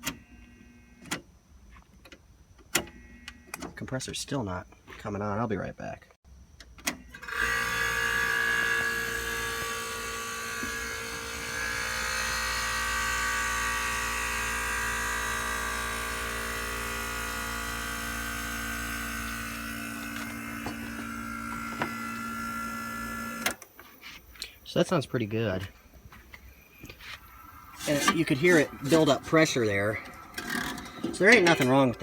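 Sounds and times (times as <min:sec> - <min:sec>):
steady whine: 0:07.1 - 0:32.0
air conditioner compressor hum: 0:07.2 - 0:23.4.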